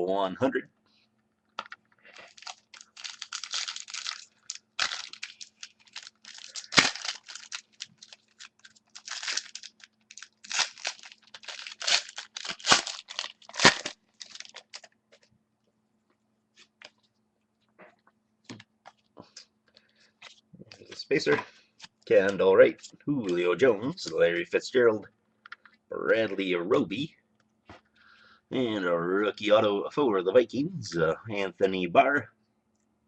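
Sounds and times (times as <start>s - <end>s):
wrapper tearing and crinkling: 2.2s - 15.0s.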